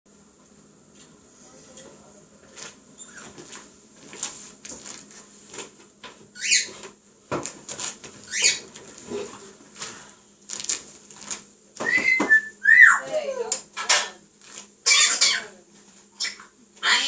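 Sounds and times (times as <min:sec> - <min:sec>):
parrot clicks and squeaks: 0:06.4 - 0:06.8, 0:08.3 - 0:08.6, 0:14.8 - 0:15.5, 0:16.2 - 0:16.5
parrot falling whistles: 0:11.8 - 0:13.0.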